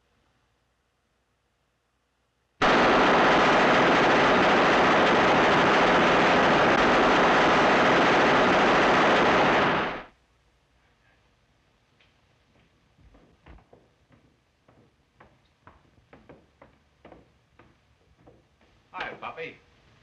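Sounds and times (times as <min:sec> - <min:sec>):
machine gun firing: 0:02.6 - 0:10.1.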